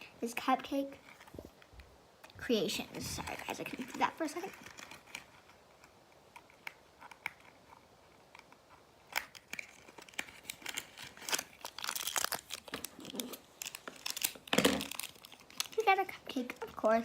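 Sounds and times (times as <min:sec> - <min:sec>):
plastic packaging crinkling and tearing: 0:02.9 - 0:05.9, 0:09.0 - 0:17.0.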